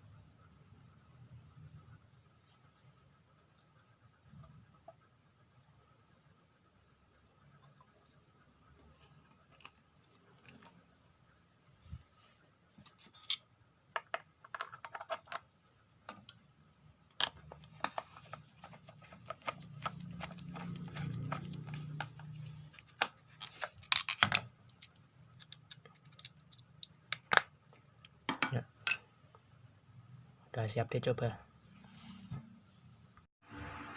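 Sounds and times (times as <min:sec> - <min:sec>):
plastic parts clicking and knocking: 0:09.0 - 0:10.8, 0:13.9 - 0:16.4, 0:17.1 - 0:29.0.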